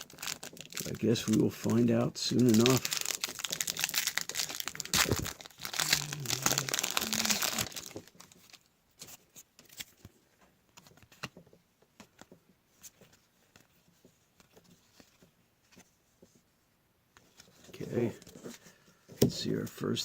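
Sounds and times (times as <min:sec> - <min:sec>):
wrapper crinkling and tearing: 0:00.0 - 0:08.7
cards clicking and rustling: 0:00.0 - 0:15.8.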